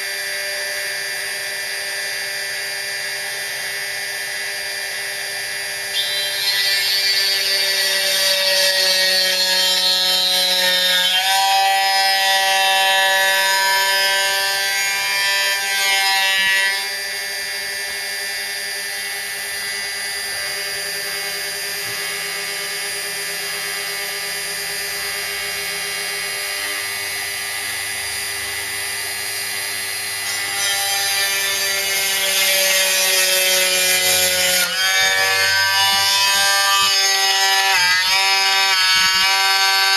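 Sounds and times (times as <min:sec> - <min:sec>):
milling machine spindle whine: 0:00.0 - 0:32.3
cutter milling carbon sheet: 0:00.0 - 0:39.9.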